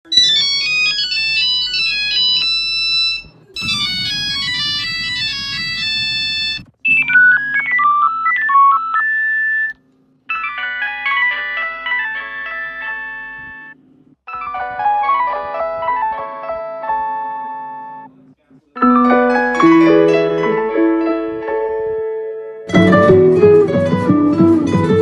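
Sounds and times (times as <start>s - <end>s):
synthesized phone ringtone melody: 0.1s - 9.7s, 10.3s - 18.0s, 18.8s - 21.2s.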